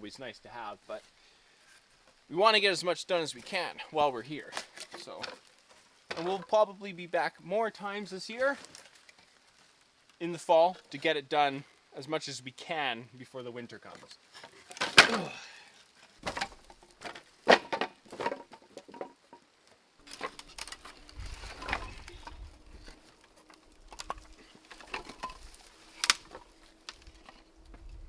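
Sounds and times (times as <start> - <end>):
wood knocking and cracking: 4.5 - 6.6, 13.9 - 19.4, 20.0 - 27.9.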